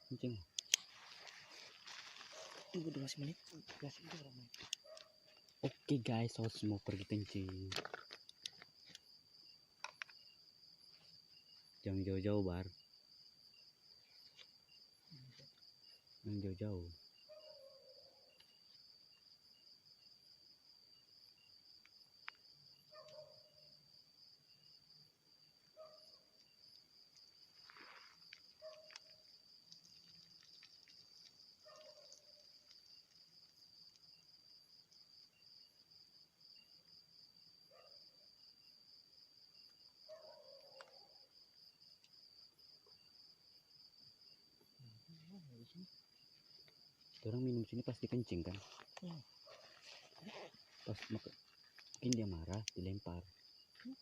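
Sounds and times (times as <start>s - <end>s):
crickets chirring: 0.0s - 54.0s.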